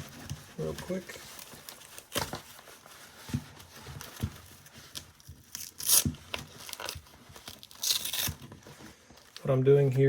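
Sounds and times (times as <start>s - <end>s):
velcro peeling apart: 5.5s - 8.5s.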